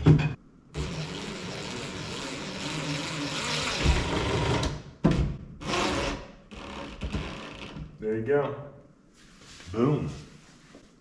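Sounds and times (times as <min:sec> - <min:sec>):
power drill running: 0:05.6 - 0:06.8.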